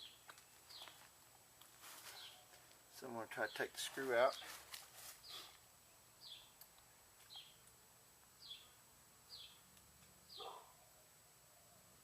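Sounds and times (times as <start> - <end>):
bird chirping: 0.0 - 1.0, 2.1 - 2.5, 5.2 - 7.7, 8.4 - 11.8.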